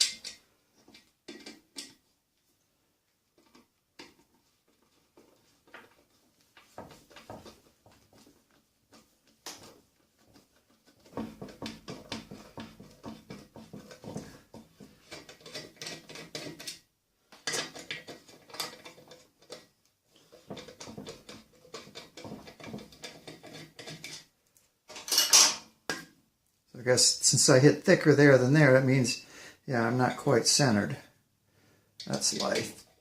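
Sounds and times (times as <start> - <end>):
metal scraping and clicking: 10.6 - 24.3, 32.0 - 33.0.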